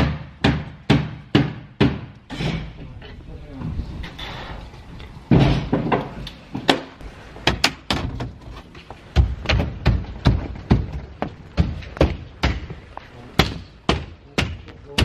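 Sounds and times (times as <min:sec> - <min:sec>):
irregular knocks and thuds: 0:05.2 - 0:15.0.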